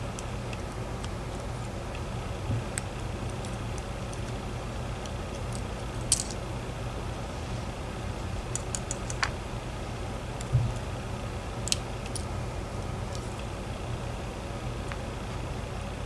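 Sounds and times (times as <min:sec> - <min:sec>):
low background hum: 0:00.0 - 0:16.0
small lock parts clicking: 0:02.6 - 0:04.4, 0:05.0 - 0:06.5, 0:08.4 - 0:09.4, 0:11.6 - 0:12.4.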